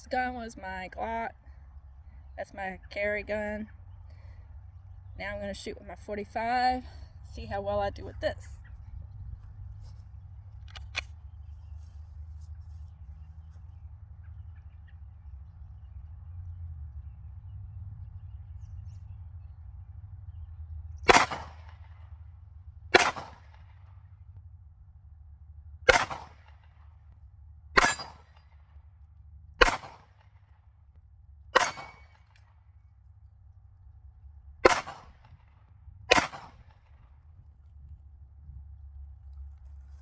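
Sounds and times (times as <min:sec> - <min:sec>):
pistol shots: 0:21.1 - 0:21.9, 0:22.9 - 0:23.7, 0:25.9 - 0:26.6, 0:27.8 - 0:28.4, 0:29.6 - 0:30.1, 0:31.6 - 0:32.2, 0:34.6 - 0:35.2, 0:36.1 - 0:36.8.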